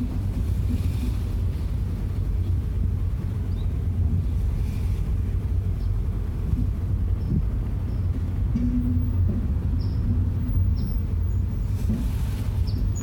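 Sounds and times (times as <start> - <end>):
car road noise rumble: 0.0 - 13.0.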